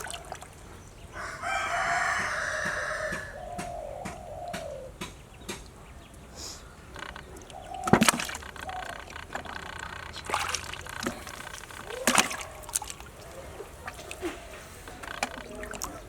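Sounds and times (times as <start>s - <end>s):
splashing in shallow water: 0.0s - 1.0s, 5.6s - 16.0s
loud splashes: 7.8s - 16.0s.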